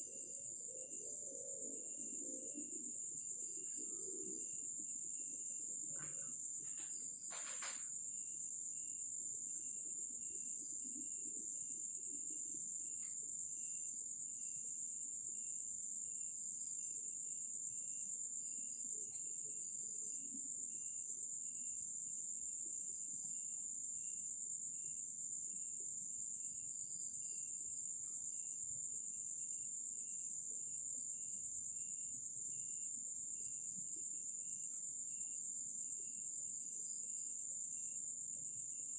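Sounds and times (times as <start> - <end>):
crickets chirring: 0.0 - 38.9
lower insect chirping: 0.0 - 38.9.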